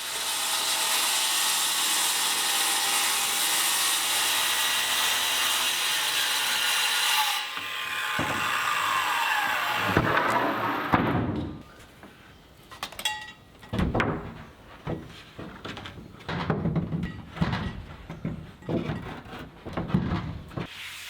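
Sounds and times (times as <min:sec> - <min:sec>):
plywood sheet knocking and thumping: 0:13.7 - 0:20.7.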